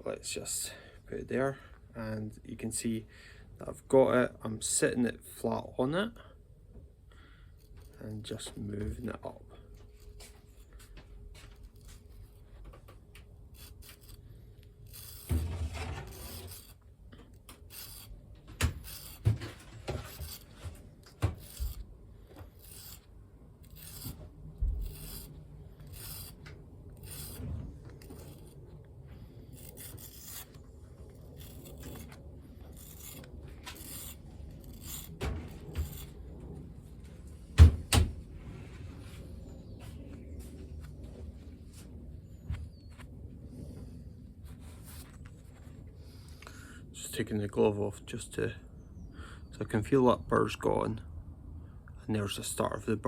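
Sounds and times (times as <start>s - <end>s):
sharpening stick scraping steel: 13.6s - 14.2s, 14.8s - 16.8s, 17.5s - 19.2s, 20.0s - 20.5s, 21.4s - 21.8s, 22.6s - 24.2s, 24.8s - 26.4s, 27.0s - 27.4s, 28.0s - 28.6s, 29.6s - 30.6s, 31.4s - 32.1s, 32.8s - 36.1s.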